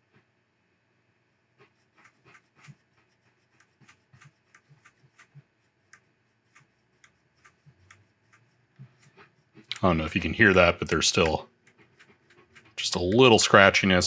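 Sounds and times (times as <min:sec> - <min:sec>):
scratchy crackles from amp speaker: 0:08.8 - 0:14.0.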